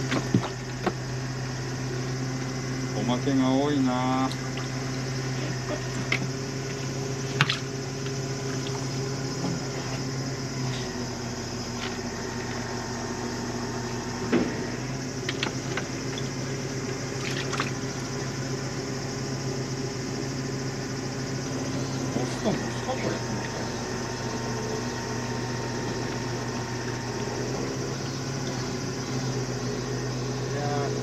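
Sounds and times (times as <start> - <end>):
boat motor humming: 0.0 - 31.0
sharp knocks: 14.3 - 14.6
water washing: 17.0 - 18.1.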